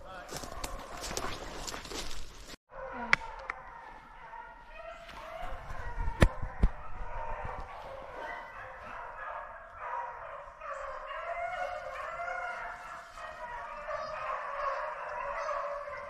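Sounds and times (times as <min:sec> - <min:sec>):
hounds baying: 0:00.3 - 0:01.3, 0:02.8 - 0:16.0.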